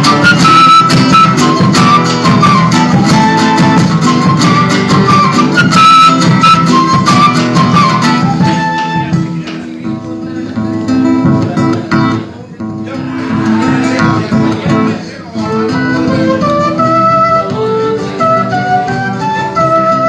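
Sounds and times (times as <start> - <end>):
flute melody: 0.0 - 9.8, 15.3 - 20.0
strummed acoustic guitars: 0.0 - 20.0.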